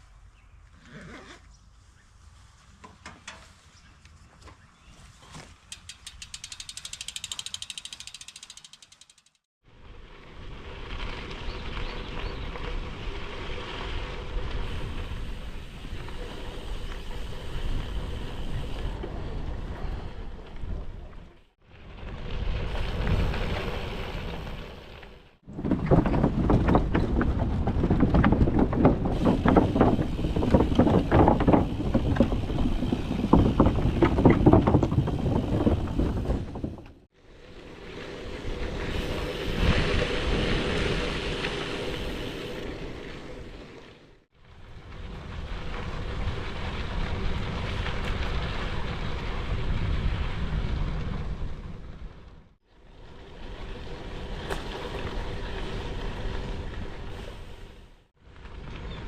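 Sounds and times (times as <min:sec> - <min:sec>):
wind buffeting microphone: 0:25.4 - 0:37.1.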